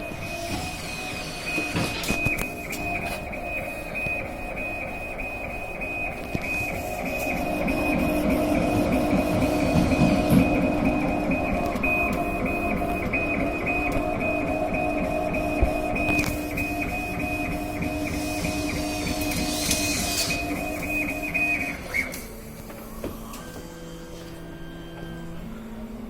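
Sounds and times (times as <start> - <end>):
high tone pulsing: 0.0 - 21.9
machine hum: 0.0 - 26.0.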